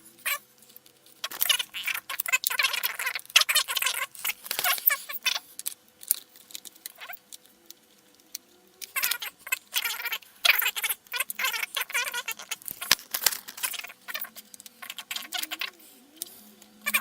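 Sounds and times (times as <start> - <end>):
hands rustling on laptop: 3.4 - 5.5.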